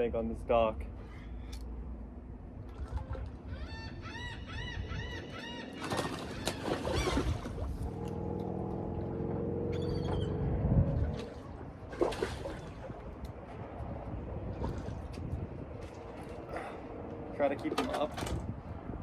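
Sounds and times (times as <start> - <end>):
low droning hum: 0.0 - 19.0
water splashing: 2.6 - 3.5, 5.7 - 18.6
bird calling repeated notes: 3.5 - 7.3, 9.6 - 10.5.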